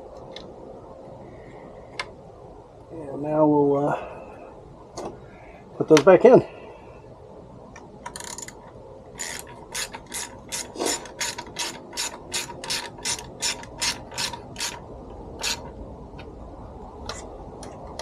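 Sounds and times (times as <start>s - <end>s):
hand ratchet clicking: 8.1s - 8.6s, 9.2s - 14.8s, 15.4s - 15.7s.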